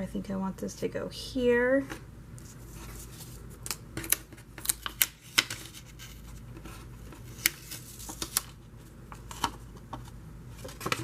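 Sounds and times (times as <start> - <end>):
paper rustling: 2.4 - 11.0.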